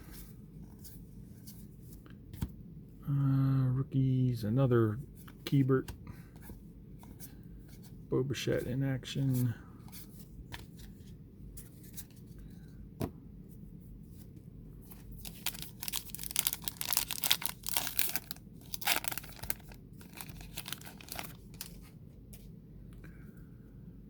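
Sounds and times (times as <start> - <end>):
plastic wrapper tearing and crinkling: 15.2 - 21.8.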